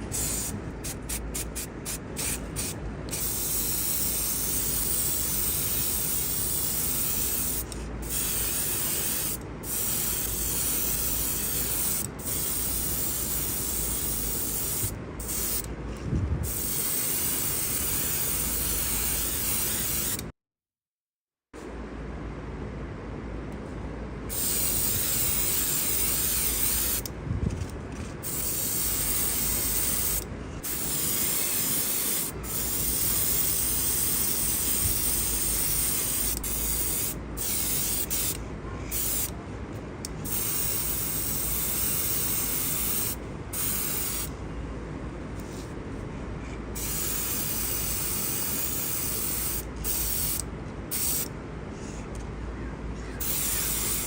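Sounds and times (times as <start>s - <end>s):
paint spraying in hissing bursts: 0.1s - 15.7s, 16.4s - 20.3s, 24.3s - 27.1s, 28.2s - 39.3s, 40.2s - 44.3s, 46.8s - 51.3s, 53.2s - 54.0s.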